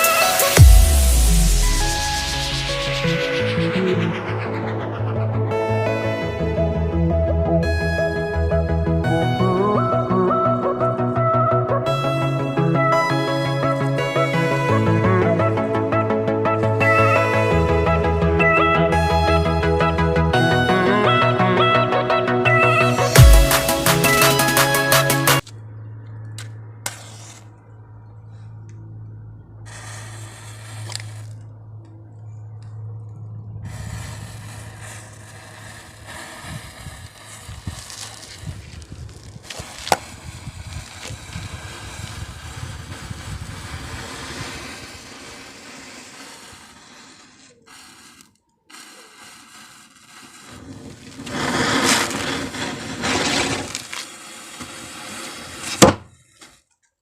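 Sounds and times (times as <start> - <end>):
hissing flare-up: 0.0 - 7.0, 29.7 - 31.6, 33.6 - 55.8
matches crackling and hissing: 29.7 - 31.6, 33.7 - 56.6
sharp crack: 33.7 - 56.4.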